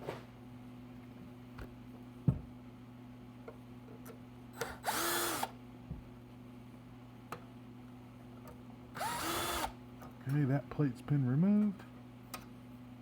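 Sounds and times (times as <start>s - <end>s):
cordless screw gun whirring: 4.6s - 5.6s, 9.0s - 9.8s.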